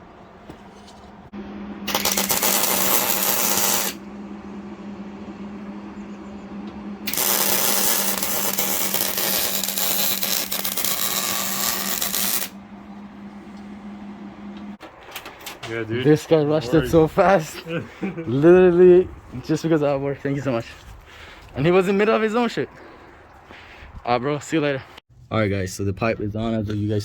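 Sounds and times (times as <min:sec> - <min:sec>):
welder humming: 0:01.0 - 0:14.9
welding arc crackling: 0:01.8 - 0:04.0, 0:07.0 - 0:12.6.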